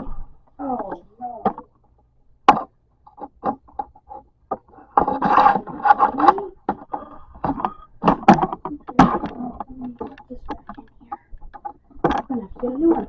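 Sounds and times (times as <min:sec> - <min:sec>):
objects knocking and clicking: 0:00.9 - 0:13.0
objects scraping and clattering: 0:03.1 - 0:13.0.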